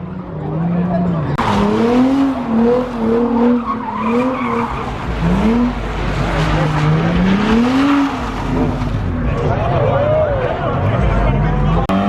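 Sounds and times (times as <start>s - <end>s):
car engine revving: 0.1s - 12.0s
tyres squealing and skidding: 1.4s - 10.5s.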